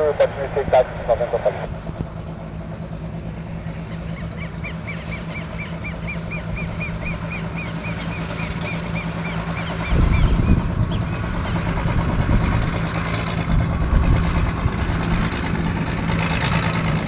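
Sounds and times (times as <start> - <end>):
piston aircraft engine running: 0.0 - 17.0.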